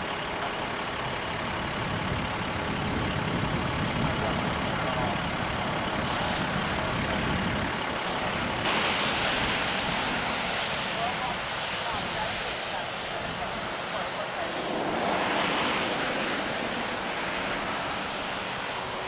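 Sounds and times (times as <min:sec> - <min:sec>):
vehicle engine and road noise: 0:00.0 - 0:19.0
bright hiss: 0:08.0 - 0:19.0.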